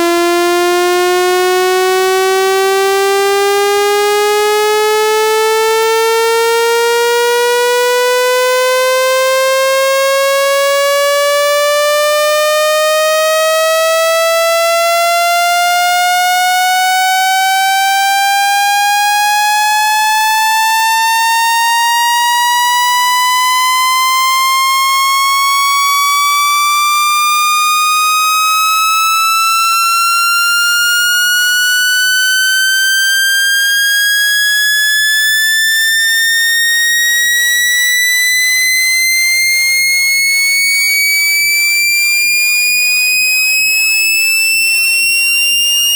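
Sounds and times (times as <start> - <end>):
buzzy electronic tone rising in pitch: 29.3 - 45.9.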